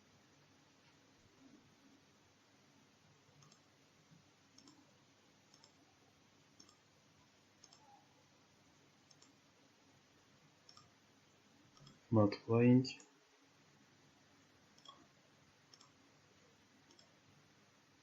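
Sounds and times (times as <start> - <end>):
computer mouse clicks: 3.4 - 3.7, 4.5 - 4.9, 5.5 - 5.8, 6.6 - 6.9, 7.6 - 8.0, 9.0 - 9.4, 10.6 - 10.9, 11.7 - 12.1, 14.8 - 15.1, 15.7 - 16.0, 16.8 - 17.2.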